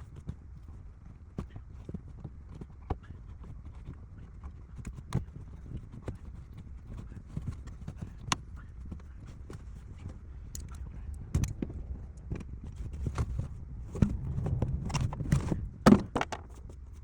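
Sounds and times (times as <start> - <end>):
low steady rumble: 6.8 - 17.0.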